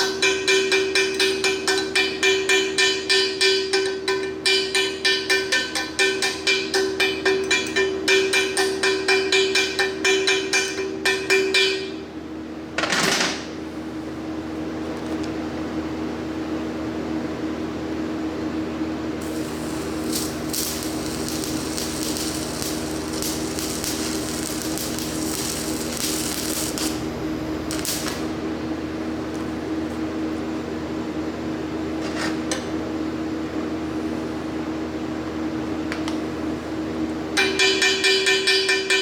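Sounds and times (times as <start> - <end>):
electrical hum: 17.8 - 31.9
welding arc crackling: 19.2 - 28.4.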